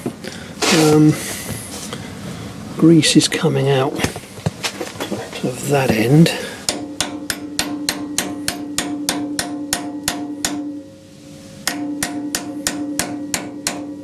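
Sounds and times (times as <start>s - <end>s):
hammer tapping on metal: 6.7s - 10.8s, 11.6s - 14.0s.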